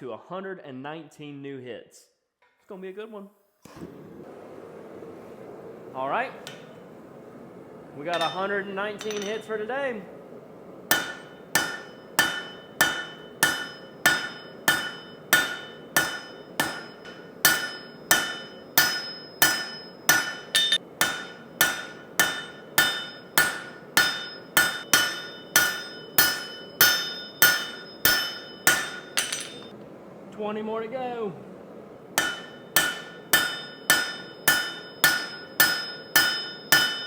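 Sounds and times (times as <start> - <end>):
hammer ringing on steel bar: 10.9 - 29.7, 32.2 - 37.0.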